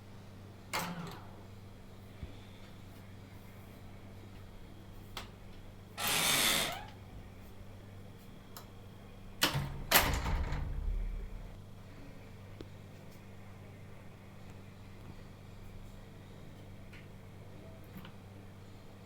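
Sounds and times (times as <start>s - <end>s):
steady low hum: 0.0s - 19.0s
door lock motor whirr: 6.0s - 7.0s
low rumble: 10.3s - 11.6s.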